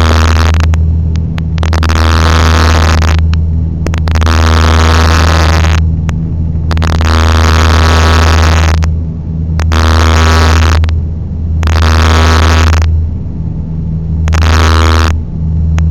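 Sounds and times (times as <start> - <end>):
aircraft engines droning: 0.1 - 5.0, 5.6 - 15.9.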